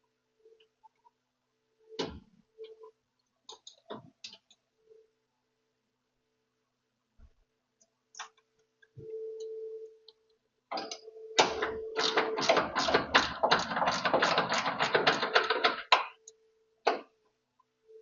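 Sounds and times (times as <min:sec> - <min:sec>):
fast mechanical clicks: 0:11.4 - 0:16.1.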